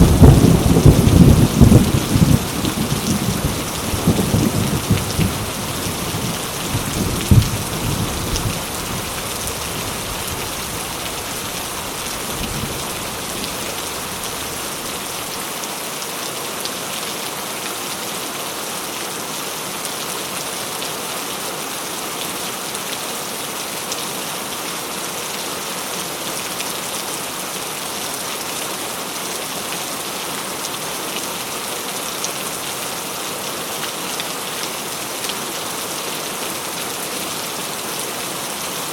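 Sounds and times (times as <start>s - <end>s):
thunder rumble: 0.0s - 5.6s, 6.2s - 8.7s
heavy rain: 0.0s - 38.9s.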